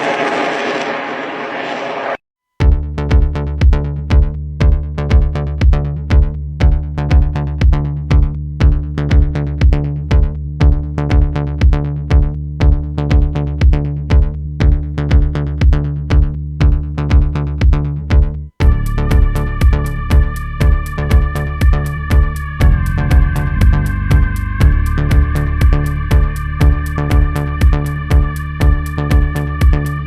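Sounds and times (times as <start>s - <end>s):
electronic music with drum-machine beat: 2.6s - 30.0s.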